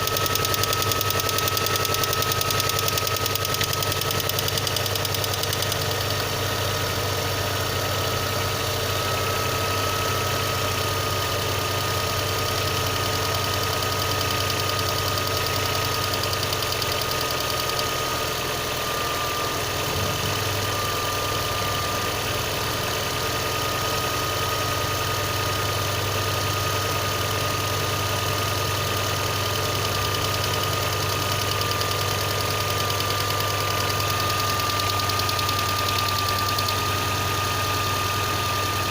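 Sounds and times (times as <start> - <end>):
car engine idling with knock: 0.0 - 6.4, 29.6 - 37.5.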